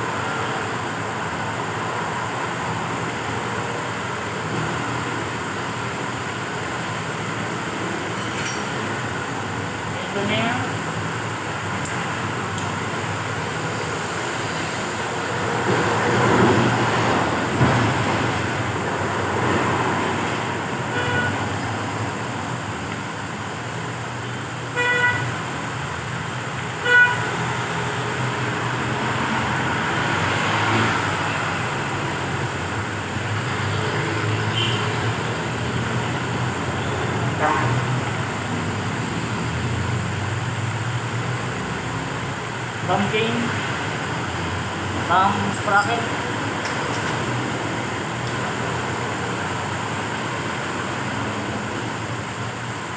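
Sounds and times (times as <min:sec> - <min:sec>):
road traffic passing: 0:00.0 - 0:52.9
vehicle horn toots: 0:20.9 - 0:21.5, 0:24.8 - 0:25.4, 0:26.8 - 0:27.3, 0:34.5 - 0:34.9, 0:37.4 - 0:37.9.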